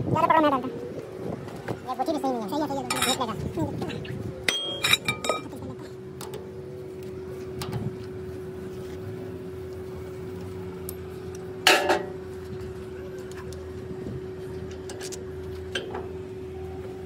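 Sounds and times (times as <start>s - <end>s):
steady hum: 0.0s - 17.0s
metal tools clinking: 2.8s - 3.3s, 4.5s - 5.6s.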